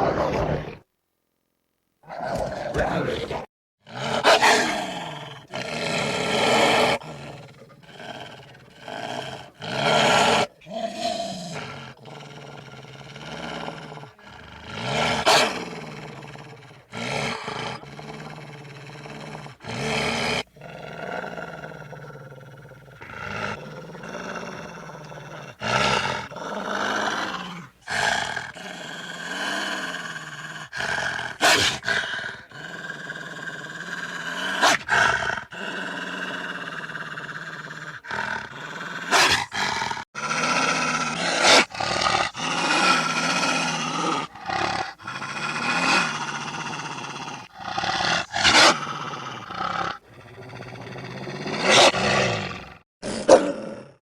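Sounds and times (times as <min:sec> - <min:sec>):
wolf growling and snarling: 0:00.0 - 0:00.9, 0:02.0 - 0:54.0.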